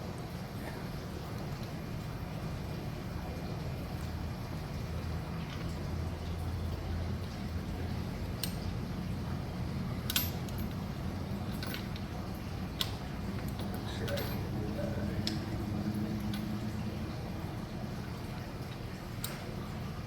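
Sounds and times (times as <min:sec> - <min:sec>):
steady low hum: 0:00.0 - 0:20.0
metallic clinks of tools: 0:10.0 - 0:12.1, 0:12.8 - 0:16.7.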